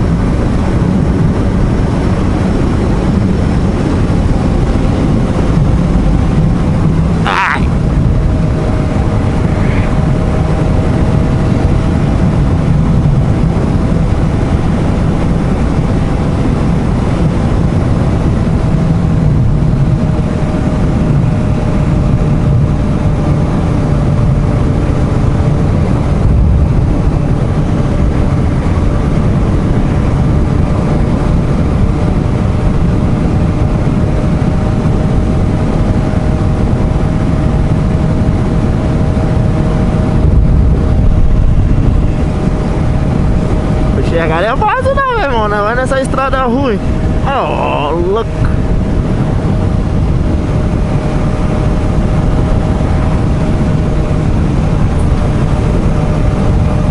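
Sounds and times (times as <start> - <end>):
wind rushing over microphone: 0.0 - 56.9
motorcycle engine note: 38.4 - 44.0.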